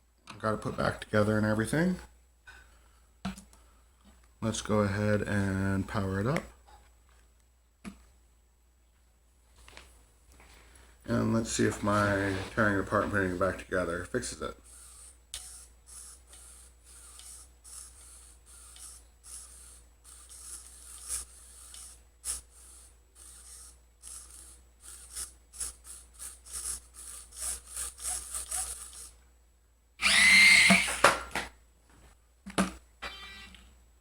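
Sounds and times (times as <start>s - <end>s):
toy car electric motor whining: 14.6s - 29.2s, 30.0s - 31.1s.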